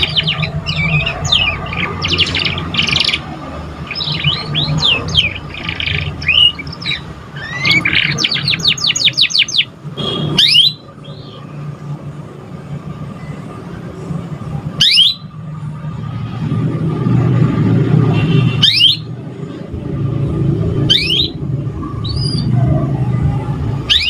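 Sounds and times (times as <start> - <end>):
canary singing: 0.0 - 11.6, 14.6 - 15.4, 18.3 - 19.2, 20.6 - 24.0.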